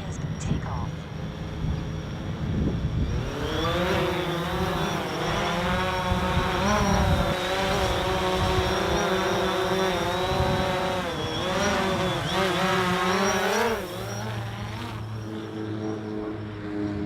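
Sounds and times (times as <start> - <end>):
wind rumbling on microphone: 0.0 - 12.4
drone propellers whining: 0.0 - 17.0.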